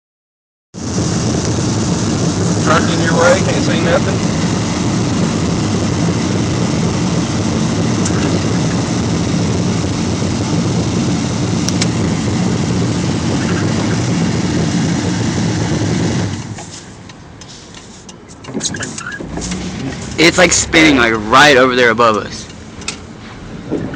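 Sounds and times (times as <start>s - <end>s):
wind and road noise in vehicle: 0.8s - 23.9s.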